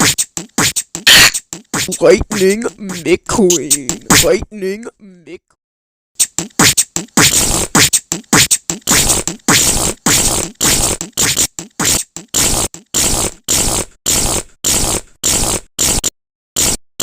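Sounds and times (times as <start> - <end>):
person making rhythmic mouth noises: 0.0 - 5.4, 6.2 - 17.0.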